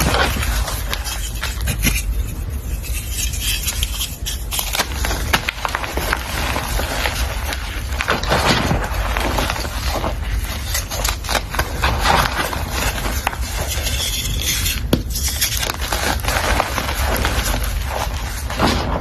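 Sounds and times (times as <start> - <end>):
scraping and crackling: 0.0 - 19.0.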